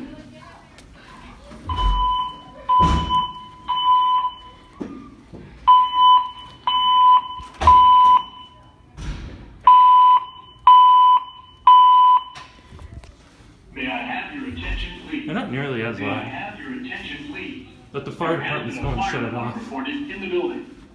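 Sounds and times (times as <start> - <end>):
fire alarm beeps: 1.7 - 9.0, 9.6 - 12.7.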